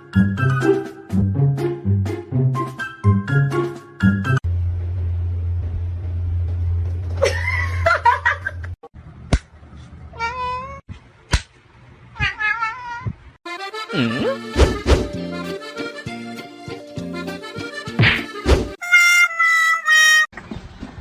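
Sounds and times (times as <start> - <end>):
cat meowing: 10.1 - 10.8, 12.2 - 13.2.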